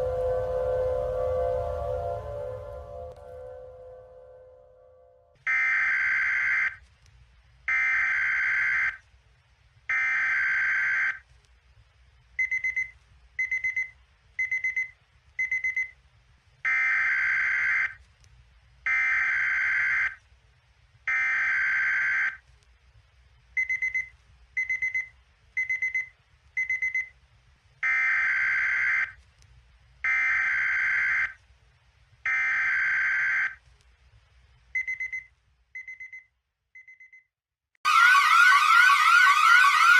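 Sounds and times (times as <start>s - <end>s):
emergency alert alarm beeping: 0.0s - 4.6s, 37.9s - 39.9s.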